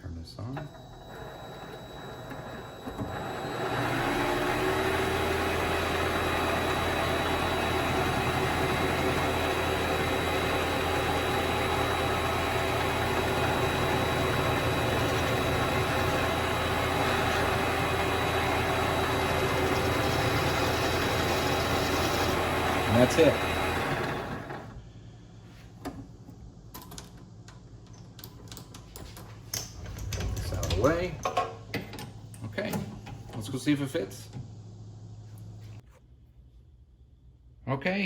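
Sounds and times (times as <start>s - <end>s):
lathe motor whining and humming: 0.6s - 24.8s.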